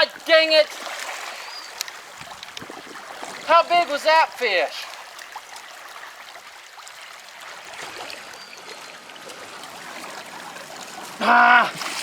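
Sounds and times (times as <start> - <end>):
river water trickling: 0.0 - 12.0
faint ticks: 1.7 - 2.8.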